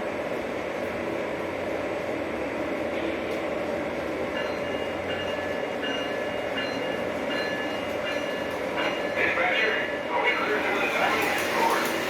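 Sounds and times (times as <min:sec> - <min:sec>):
model train rolling hum: 0:09.6 - 0:12.0.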